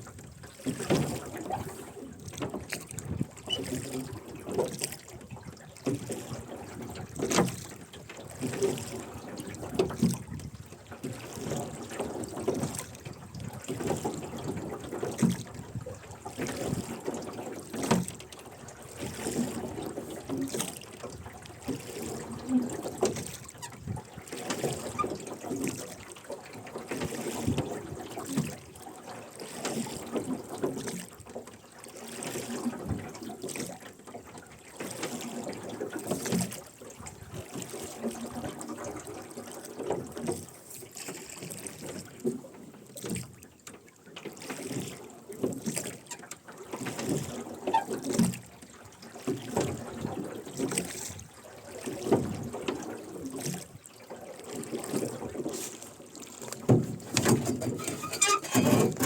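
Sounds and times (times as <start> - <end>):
oar blades splashing and dripping: 0.0 - 59.0
oarlocks creaking: 57.5 - 59.0.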